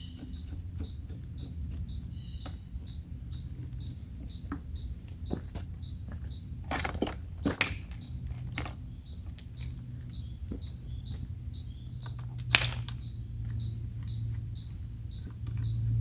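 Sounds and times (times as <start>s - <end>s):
bird chirping: 0.0s - 16.0s
knocks and clatters: 5.3s - 9.8s, 12.0s - 13.0s.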